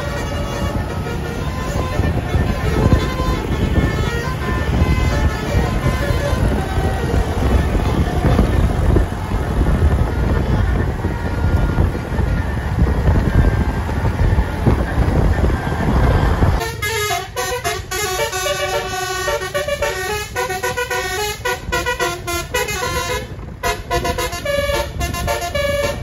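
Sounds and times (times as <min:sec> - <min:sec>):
multi-tone bus air horn melody: 0:00.0 - 0:15.4, 0:16.4 - 0:26.0
loud low rumble: 0:00.0 - 0:16.6.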